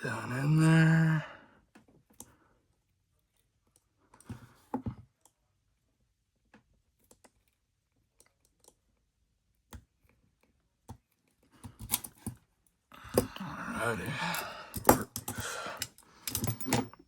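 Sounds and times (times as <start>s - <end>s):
handcuff metallic clicks and rattles: 14.3s - 17.0s.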